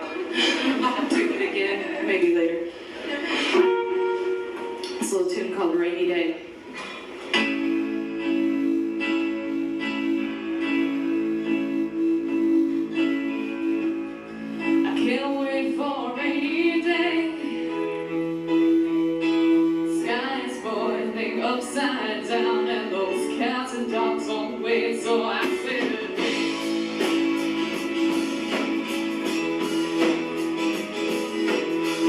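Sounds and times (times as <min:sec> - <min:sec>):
rock band playing live: 0:03.2 - 0:05.2, 0:25.0 - 0:32.0
woman singing: 0:14.6 - 0:17.9, 0:19.8 - 0:26.3.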